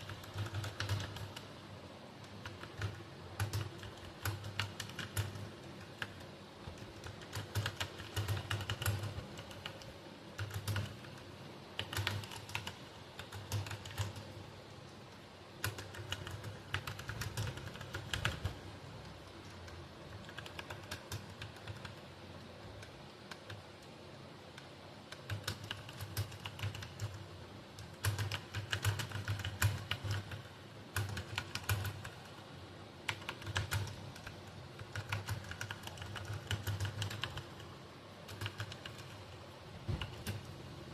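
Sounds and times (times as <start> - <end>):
computer keyboard key clicks: 0.0 - 1.6, 2.2 - 11.2, 11.8 - 14.4, 15.6 - 18.6, 19.4 - 23.9, 24.5 - 32.3, 33.0 - 40.6.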